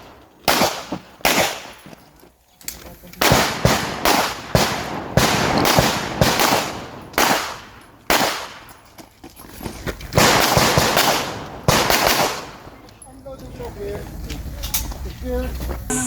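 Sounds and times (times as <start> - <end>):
pistol shots with echo: 0.0 - 1.8, 3.2 - 8.7, 10.2 - 12.8.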